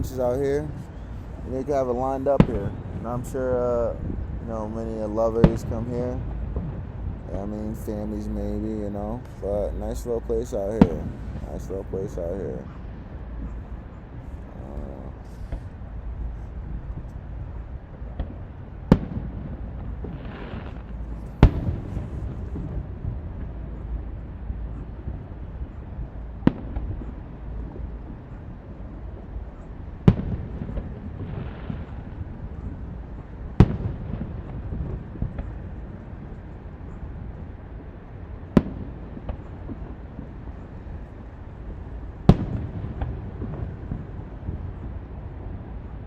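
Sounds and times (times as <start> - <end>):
steady low rumble: 0.0 - 46.0
firework shell bursts booming: 0.1 - 3.4, 9.2 - 13.7, 18.2 - 23.6, 30.0 - 37.0, 42.2 - 45.1.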